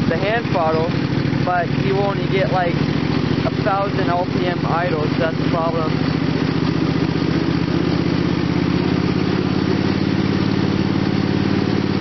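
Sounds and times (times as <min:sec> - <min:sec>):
lawn tractor engine idling: 0:00.0 - 0:12.0.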